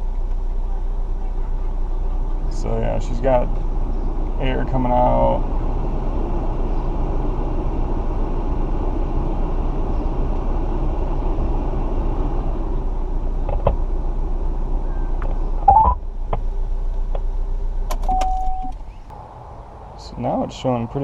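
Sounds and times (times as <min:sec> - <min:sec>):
car engine idling: 0:00.0 - 0:21.0
blower fan running: 0:01.8 - 0:15.6
short electronic beep: 0:15.6 - 0:16.0, 0:18.1 - 0:18.8.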